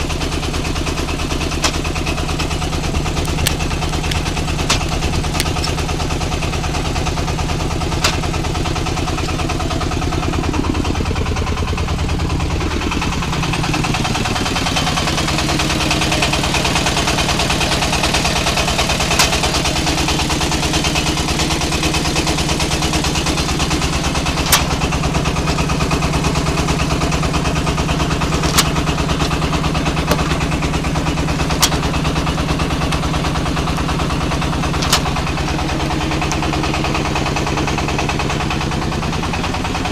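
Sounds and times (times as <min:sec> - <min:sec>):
brick moulding machine running: 0:00.0 - 0:39.9.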